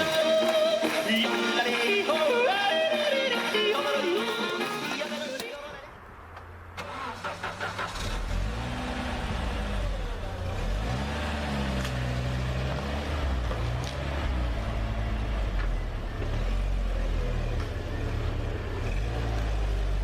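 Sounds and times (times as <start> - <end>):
engine cranking: 0.0 - 12.0
engine running and revving: 6.8 - 20.0.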